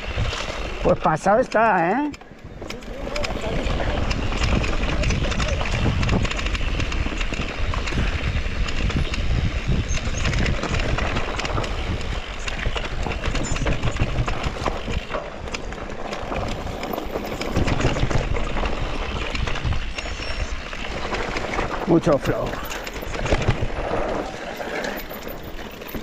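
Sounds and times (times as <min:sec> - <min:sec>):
wind rumble on microphone: 0:00.0 - 0:01.1, 0:02.3 - 0:26.0
tyres over dirt and roots: 0:00.0 - 0:26.0
bike clattering and knocking: 0:01.6 - 0:20.1, 0:20.8 - 0:26.0.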